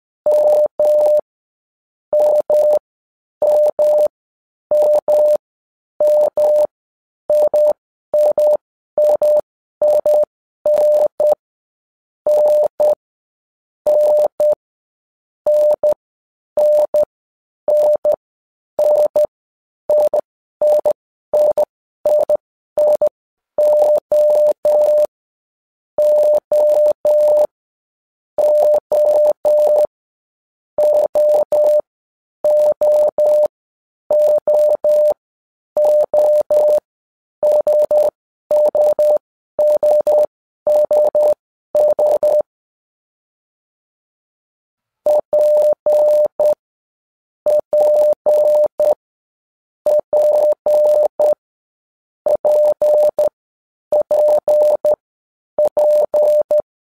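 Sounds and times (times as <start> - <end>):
morse code beeps: 0.3 - 1.2, 2.2 - 2.8, 3.4 - 4.1, 4.7 - 5.4, 6.0 - 6.7, 7.3 - 11.4, 12.3 - 13.0, 13.9 - 14.6, 15.5 - 16.0, 16.6 - 17.1, 17.7 - 18.2, 18.8 - 19.3, 19.9 - 25.1, 26.0 - 27.6, 28.4 - 29.9, 30.8 - 33.5, 34.1 - 35.2, 35.8 - 42.5, 45.1 - 46.6, 47.5 - 49.0, 49.9 - 51.4, 52.3 - 55.0, 55.6 - 56.7.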